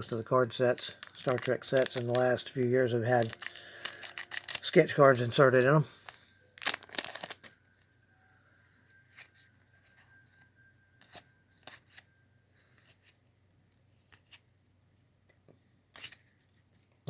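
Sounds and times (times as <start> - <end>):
trading cards clicking and rustling: 0.0 - 7.6, 11.0 - 12.1.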